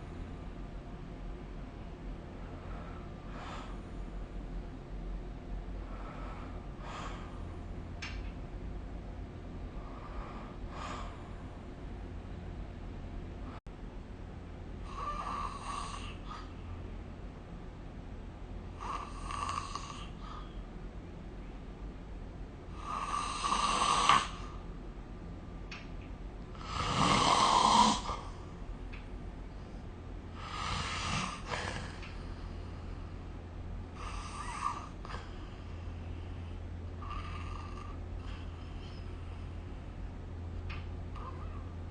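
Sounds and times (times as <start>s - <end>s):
person snoring: 18.8s - 20.2s, 22.8s - 24.4s, 26.6s - 28.3s, 30.4s - 32.0s, 34.0s - 35.3s.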